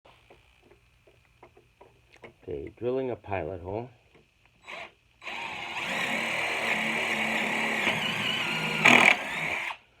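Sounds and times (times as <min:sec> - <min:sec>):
power drill boring wood: 0:04.6 - 0:09.8.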